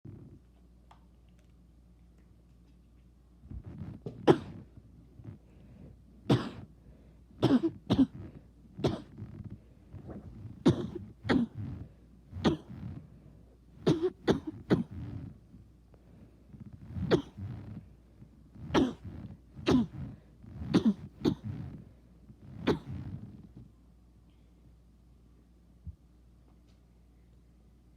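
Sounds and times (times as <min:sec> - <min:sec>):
throat clearing: 0:03.8 - 0:05.4, 0:06.3 - 0:06.7, 0:07.4 - 0:13.0, 0:13.8 - 0:15.3, 0:17.0 - 0:17.8, 0:18.6 - 0:21.8, 0:22.5 - 0:23.4
man coughing hard: 0:06.3 - 0:06.7, 0:07.4 - 0:09.2, 0:10.6 - 0:11.8, 0:13.9 - 0:15.1, 0:17.1 - 0:17.5, 0:18.8 - 0:20.0, 0:20.7 - 0:21.6, 0:22.7 - 0:23.1.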